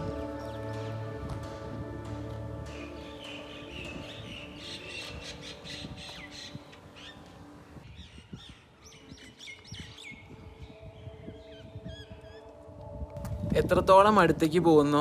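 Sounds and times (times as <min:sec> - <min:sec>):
birds chirping and squawking: 0:02.7 - 0:10.2.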